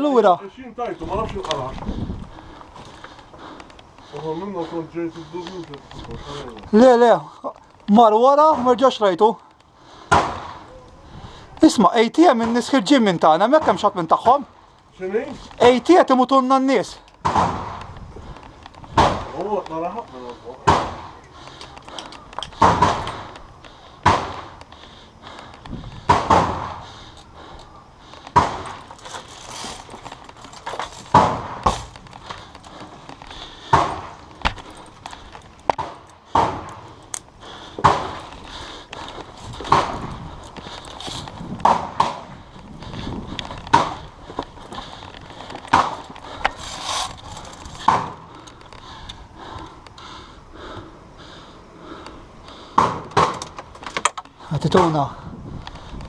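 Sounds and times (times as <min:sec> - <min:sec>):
sharp cracks and knocks: 0:07.5 - 0:10.6, 0:17.0 - 0:27.1, 0:28.0 - 0:50.1, 0:52.0 - 0:54.9.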